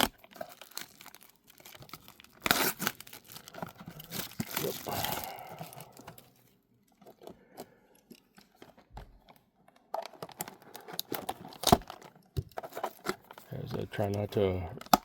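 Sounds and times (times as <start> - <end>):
blade cutting shrink wrap: 0.0 - 5.1
plastic wrap crinkling: 0.0 - 7.5.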